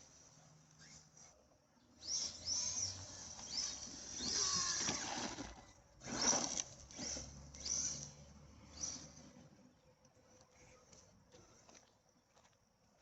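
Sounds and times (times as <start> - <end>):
electric motor whining: 2.0 - 9.2.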